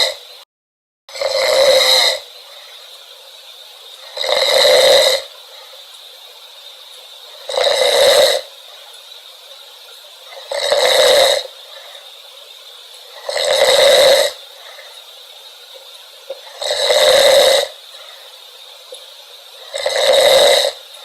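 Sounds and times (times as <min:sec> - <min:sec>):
person snoring loudly: 0:00.0 - 0:00.3, 0:01.1 - 0:02.7, 0:04.0 - 0:05.3, 0:07.4 - 0:08.5, 0:10.3 - 0:12.0, 0:13.1 - 0:15.0, 0:16.4 - 0:18.2, 0:19.6 - 0:21.0.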